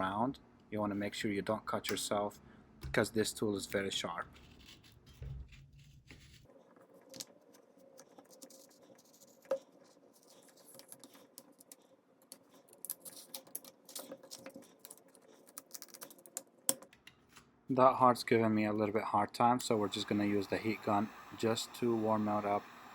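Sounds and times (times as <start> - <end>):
faint steady hum: 17.7 - 22.9.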